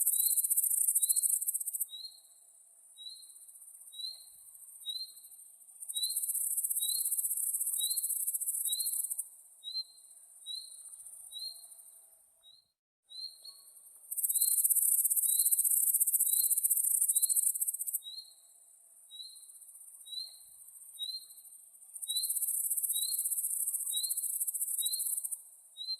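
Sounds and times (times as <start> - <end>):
insects trilling chorus: 5.9 - 9.2, 14.1 - 18.0, 22.0 - 25.5.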